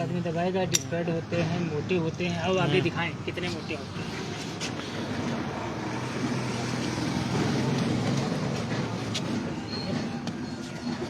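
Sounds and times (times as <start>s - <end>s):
vehicle engine rumbling: 3.0s - 11.0s.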